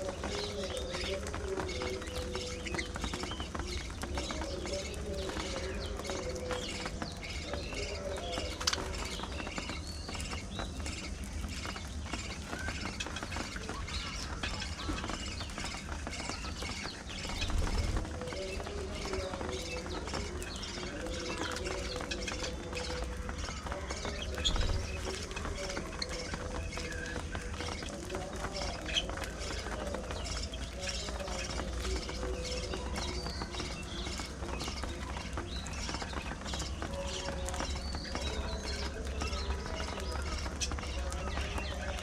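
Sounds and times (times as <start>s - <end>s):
budgerigars chattering: 0.0s - 42.0s.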